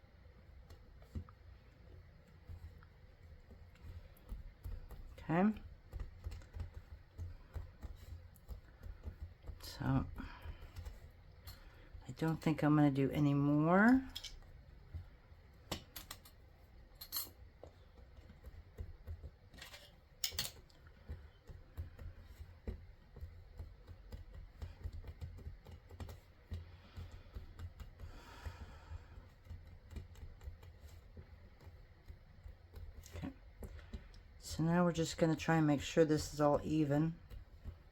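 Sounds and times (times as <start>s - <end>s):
low steady hum: 0.0s - 37.9s
light clicks and taps of clay tools: 0.6s - 12.5s, 20.2s - 34.4s.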